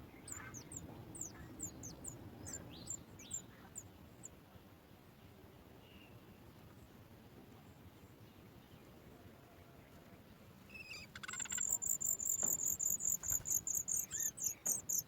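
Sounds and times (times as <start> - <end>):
nestlings begging chirps: 0.2 - 3.9, 10.7 - 15.0
bird call and rattle: 10.7 - 15.0.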